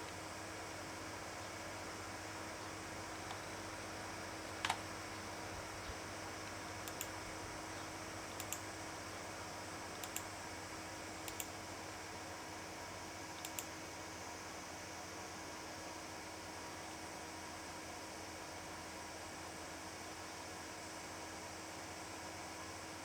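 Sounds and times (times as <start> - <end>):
steady hiss with low hum: 0.0 - 23.0
faint clicks: 6.5 - 7.2, 8.4 - 8.6, 10.0 - 10.3, 11.2 - 11.5, 13.4 - 13.7.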